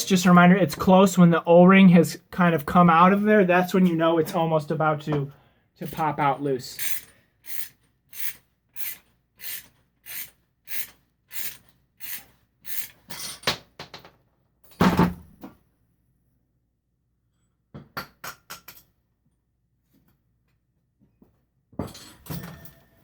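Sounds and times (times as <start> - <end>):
tool turning cap bolt: 6.8 - 13.0.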